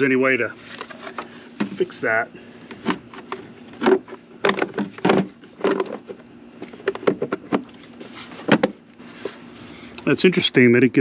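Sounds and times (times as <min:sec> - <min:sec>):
faint high whine: 0:00.0 - 0:11.0
hands handling plastic parts: 0:00.6 - 0:01.9.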